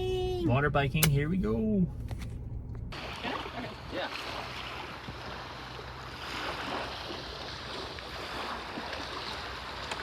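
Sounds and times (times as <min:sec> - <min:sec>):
wind: 0:00.0 - 0:10.0
water noise around canoe: 0:02.9 - 0:10.0.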